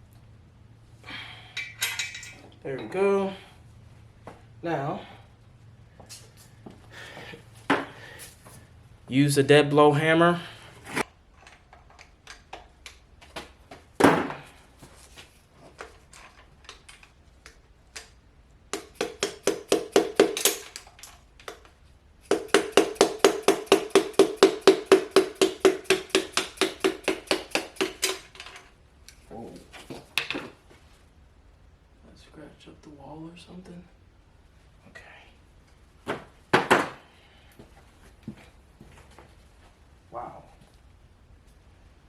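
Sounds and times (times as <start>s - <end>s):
hammer striking metal driver: 18.7s - 20.8s, 22.3s - 28.3s.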